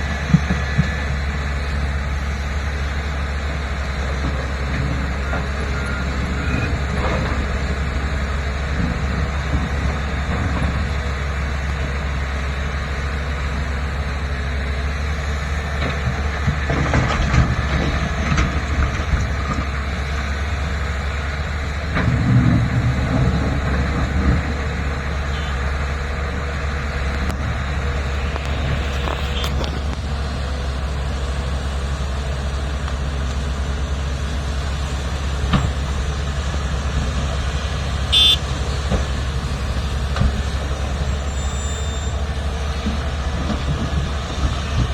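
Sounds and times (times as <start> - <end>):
heavy diesel machinery rumbling: 0.0 - 44.9
brief high squeal: 41.1 - 42.2.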